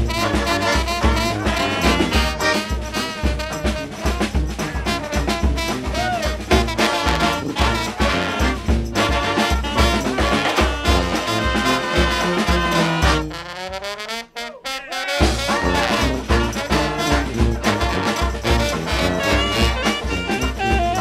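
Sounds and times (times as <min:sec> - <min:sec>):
brass band swing music: 0:00.0 - 0:21.0.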